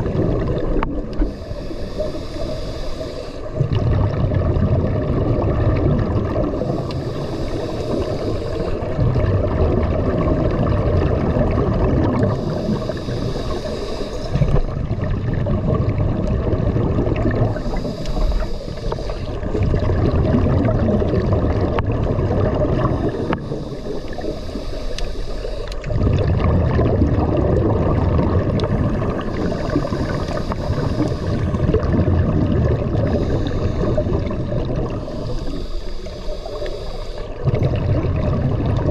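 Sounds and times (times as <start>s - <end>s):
exhaled air bubbling: 0.0s - 38.9s
low rumble of water: 0.0s - 38.9s
regulator breathing hiss: 1.0s - 3.6s, 6.6s - 9.0s, 12.3s - 14.8s, 17.5s - 19.6s, 22.8s - 25.9s, 28.6s - 31.8s, 33.0s - 37.4s.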